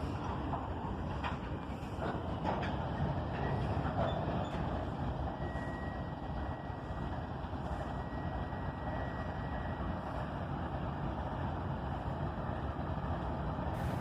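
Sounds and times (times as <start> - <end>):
diesel locomotives idling: 0.0 - 14.0.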